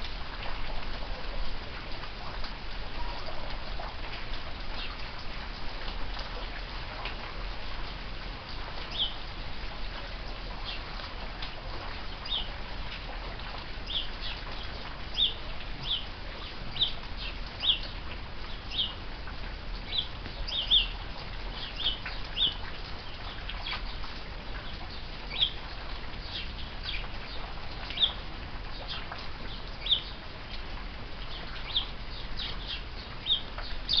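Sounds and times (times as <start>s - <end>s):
steady rain falling: 0.0s - 34.0s
sparrows chirping: 8.9s - 9.2s, 13.8s - 19.0s, 19.9s - 23.9s, 24.6s - 25.6s, 26.2s - 28.2s, 28.8s - 30.2s, 31.3s - 34.0s.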